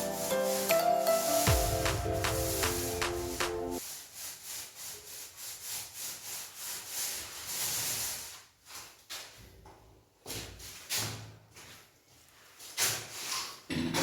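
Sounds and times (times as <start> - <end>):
rhythmic rubbing on a surface: 0.0 - 8.0.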